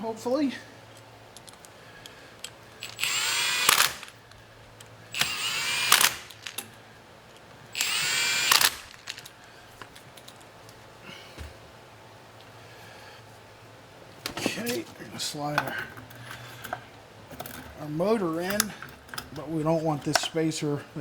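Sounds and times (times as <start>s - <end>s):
power drill whine: 2.8s - 4.2s, 5.1s - 6.6s, 7.7s - 9.2s.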